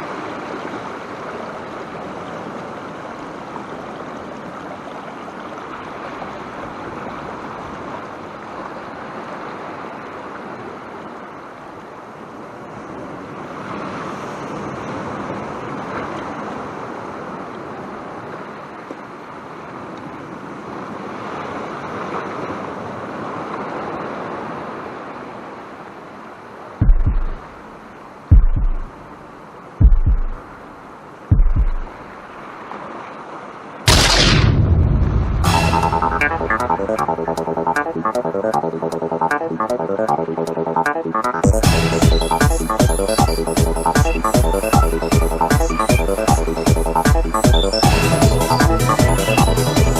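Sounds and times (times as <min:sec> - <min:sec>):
heavy low thumps: 0:26.8 - 0:27.4, 0:28.3 - 0:28.9, 0:29.8 - 0:30.4, 0:31.3 - 0:31.9, 0:33.9 - 0:37.7, 0:41.4 - 0:43.0.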